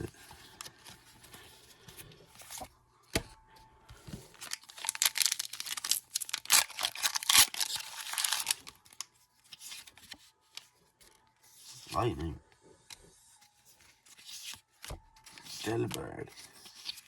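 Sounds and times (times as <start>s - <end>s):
foil wrapper crinkling and tearing: 4.3s - 9.1s.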